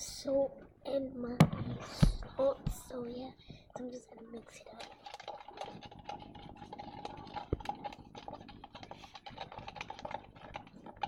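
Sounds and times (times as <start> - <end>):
utensil stirring in container: 2.2 - 11.0.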